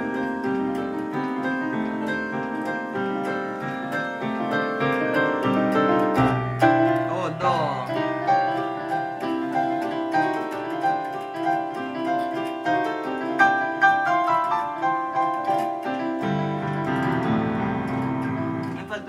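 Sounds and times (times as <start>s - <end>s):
electronic keyboard piano: 0.0s - 19.0s.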